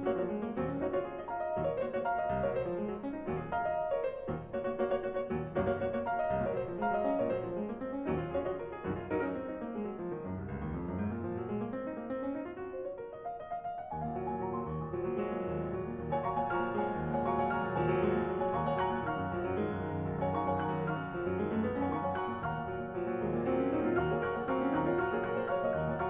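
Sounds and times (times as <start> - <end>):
instrumental piano music: 0.0 - 26.0.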